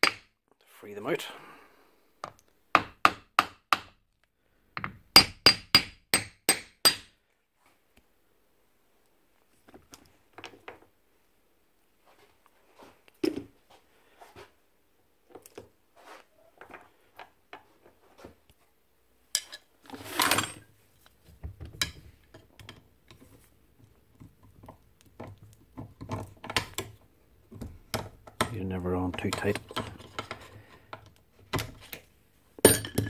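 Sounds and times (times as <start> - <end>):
metal parts and tools clinking: 19.4 - 20.7, 32.6 - 33.0.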